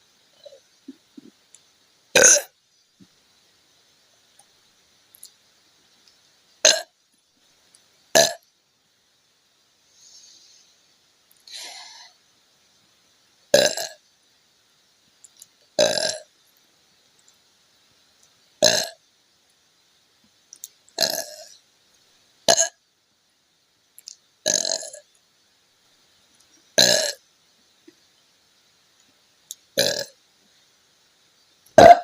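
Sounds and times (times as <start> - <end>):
woman burping: 2.2 - 2.5.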